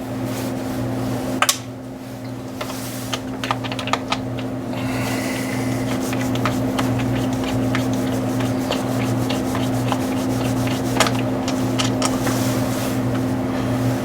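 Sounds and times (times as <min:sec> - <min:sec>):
steady low hum: 0:01.4 - 0:14.0
tool rubbing on metal: 0:04.3 - 0:13.0.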